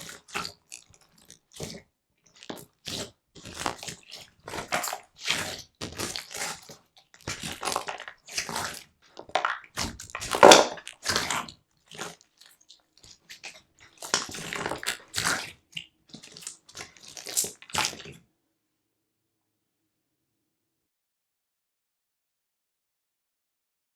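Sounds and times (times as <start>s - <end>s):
slime squelching: 0.0s - 18.3s.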